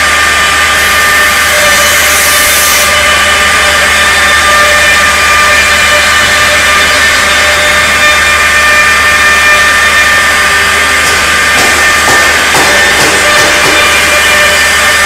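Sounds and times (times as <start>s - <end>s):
machine noise: 0.0s - 15.0s
router spindle high whine: 0.0s - 15.0s.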